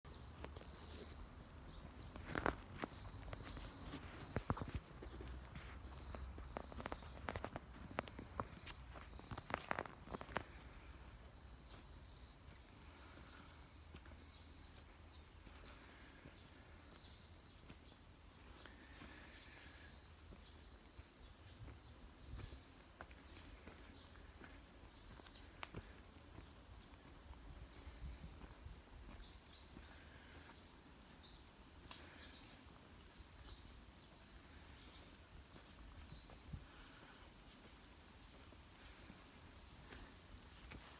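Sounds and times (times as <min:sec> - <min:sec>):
insects chirring: 0:00.1 - 0:40.9
footsteps crunching on trail: 0:00.3 - 0:32.2, 0:34.1 - 0:40.9.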